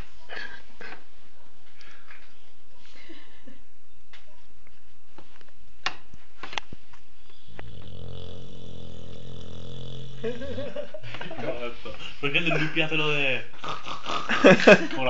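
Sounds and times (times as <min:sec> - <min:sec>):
dog snoring: 0:07.2 - 0:11.0.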